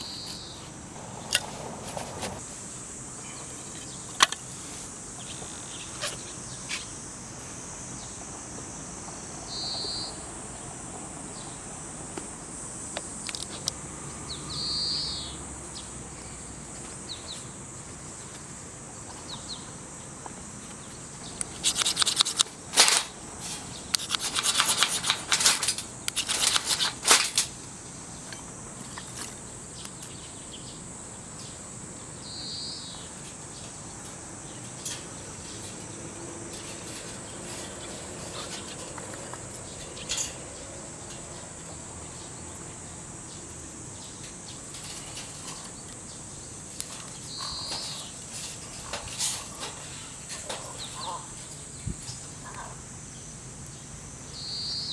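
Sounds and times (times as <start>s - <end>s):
rustling handling noise: 20.6s - 30.2s, 33.0s - 40.4s, 44.2s - 52.5s.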